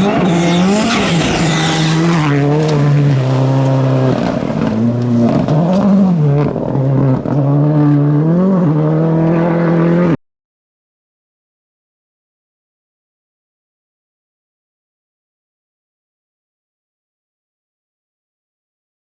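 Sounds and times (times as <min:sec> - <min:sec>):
rally car engine revving: 0:00.0 - 0:10.2.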